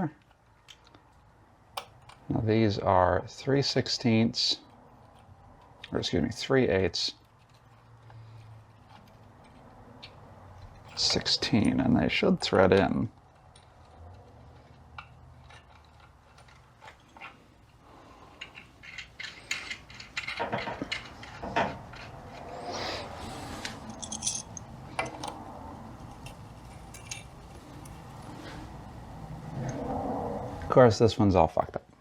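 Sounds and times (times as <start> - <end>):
metal bolts clinking and scraping: 4.0 - 13.9, 14.5 - 28.6.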